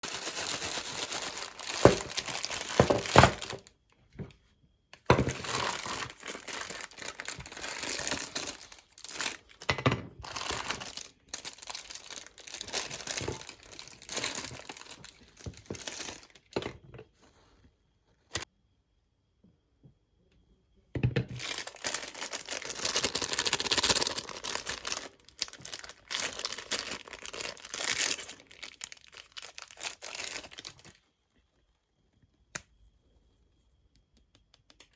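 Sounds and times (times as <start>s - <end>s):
crinkling and tearing handling noise: 0.0s - 3.7s, 5.1s - 16.6s, 21.4s - 31.0s.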